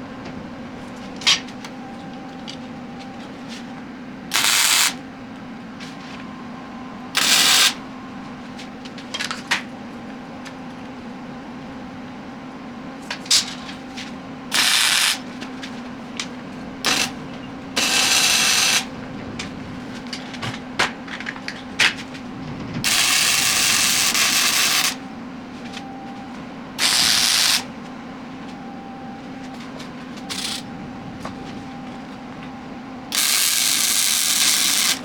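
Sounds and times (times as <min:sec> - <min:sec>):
machine hum: 0:00.0 - 0:35.0
arc welding crackle: 0:04.3 - 0:05.0, 0:07.2 - 0:07.8, 0:14.5 - 0:15.3, 0:16.9 - 0:17.2, 0:22.9 - 0:25.0, 0:26.8 - 0:27.7, 0:33.1 - 0:35.0.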